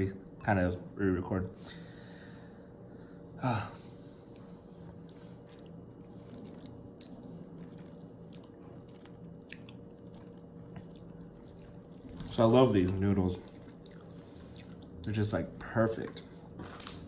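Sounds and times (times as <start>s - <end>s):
steady low hum: 0.0s - 17.0s
person chewing noodles: 4.2s - 15.1s.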